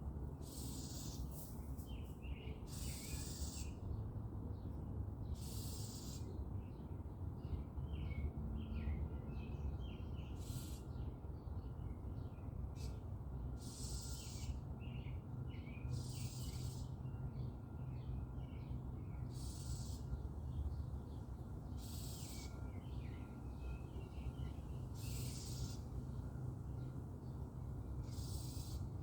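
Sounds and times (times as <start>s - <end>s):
small birds chirping: 0.4s - 3.8s, 5.3s - 6.4s, 8.8s - 11.0s, 13.6s - 17.5s, 18.4s - 29.0s.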